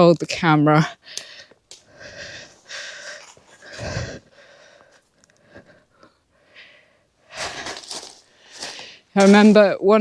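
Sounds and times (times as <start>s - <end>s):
person breathing out: 1.0s - 9.1s
faint clicks: 1.1s - 1.9s.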